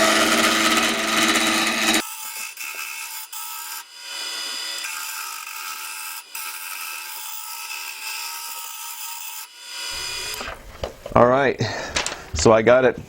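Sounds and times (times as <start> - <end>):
lathe whine: 0.0 - 2.0
turning tool scraping wood: 0.0 - 2.0.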